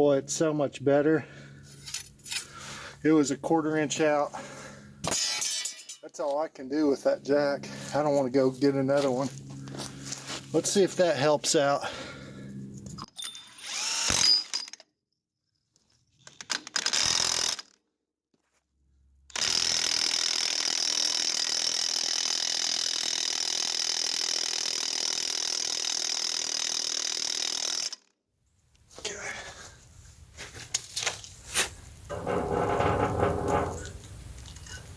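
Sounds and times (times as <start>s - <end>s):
power tool running: 13.6s - 14.2s.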